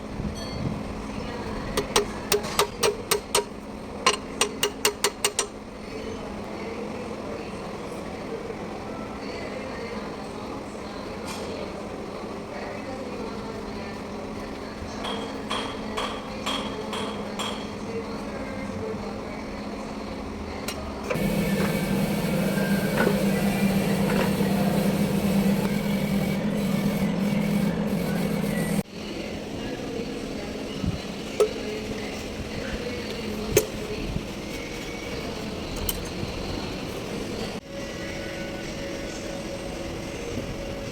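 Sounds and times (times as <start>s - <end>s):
tractor diesel engine humming: 21.1s - 28.8s.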